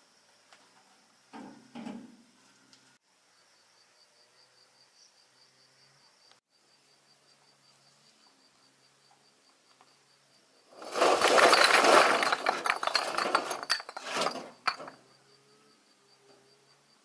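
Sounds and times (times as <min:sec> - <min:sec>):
insects chirping faintly: 0:00.0 - 0:17.0
hard objects clattering and crunching: 0:10.7 - 0:15.0.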